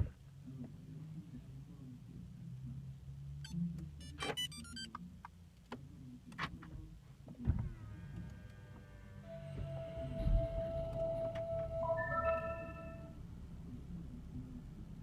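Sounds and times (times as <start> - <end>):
short electronic beeps: 11.8 - 13.1
steady chime-like tone: 11.8 - 13.1.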